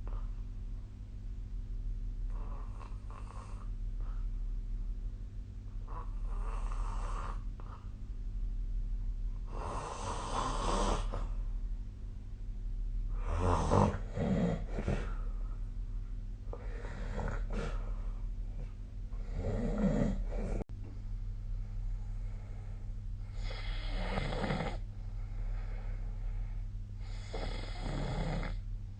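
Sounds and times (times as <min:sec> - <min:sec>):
steady low hum: 0:00.0 - 0:28.9
person snoring: 0:05.9 - 0:07.8, 0:09.4 - 0:11.4, 0:13.1 - 0:15.3, 0:16.5 - 0:18.0, 0:19.2 - 0:20.6, 0:23.2 - 0:24.8, 0:27.0 - 0:28.6.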